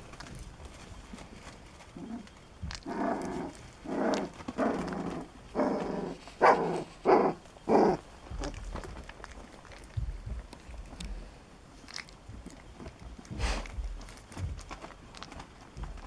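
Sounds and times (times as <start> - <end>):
dog barking: 6.4 - 7.4.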